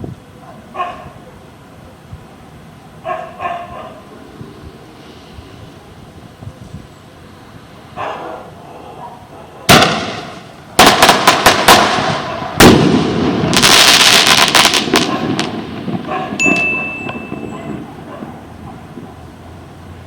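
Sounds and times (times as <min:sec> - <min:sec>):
firework crackling: 0:09.6 - 0:20.0
firework bangs: 0:09.7 - 0:19.7.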